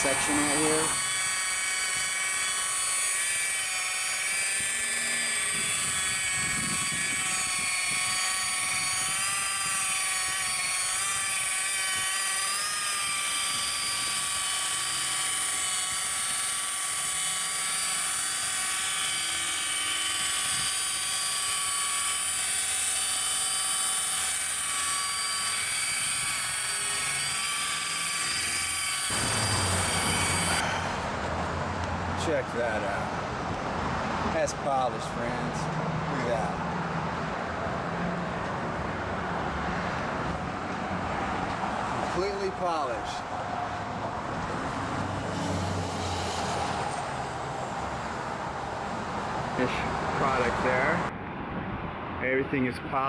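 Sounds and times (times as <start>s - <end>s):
electric polisher whining: 0.0s - 33.0s.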